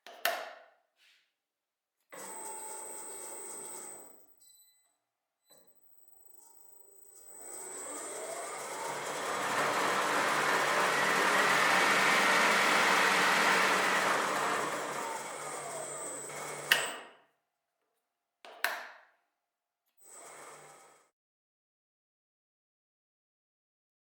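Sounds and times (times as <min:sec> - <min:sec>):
machine running with hum: 0:07.6 - 0:16.7.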